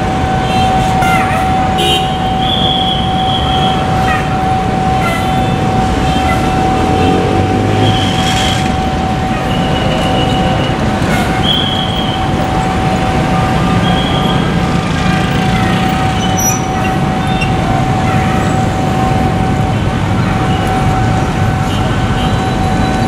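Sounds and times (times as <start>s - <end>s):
level crossing warning alarm: 0.0s - 23.0s
road traffic noise: 0.0s - 23.0s.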